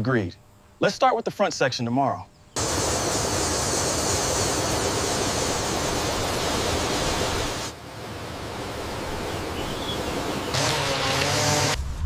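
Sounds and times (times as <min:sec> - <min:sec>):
steady rushing noise: 0:02.6 - 0:10.4.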